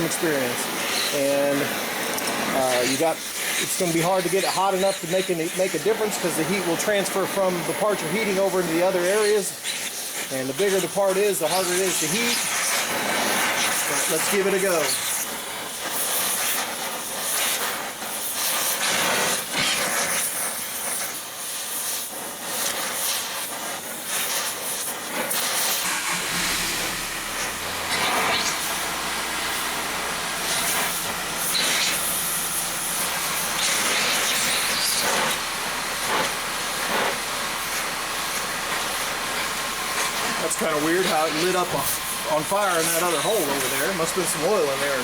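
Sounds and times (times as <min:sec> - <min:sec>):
gas torch hissing: 0:00.0 - 0:45.0
low hum: 0:25.8 - 0:38.5.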